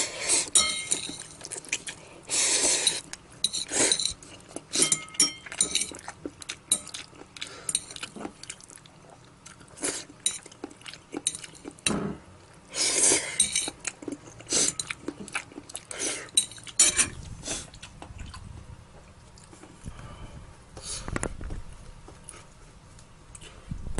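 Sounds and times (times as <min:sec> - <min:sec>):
utensils clinking against a bowl: 0:00.4 - 0:01.9, 0:02.7 - 0:06.1, 0:06.7 - 0:08.2, 0:10.2 - 0:12.0, 0:13.2 - 0:15.3, 0:16.2 - 0:17.2.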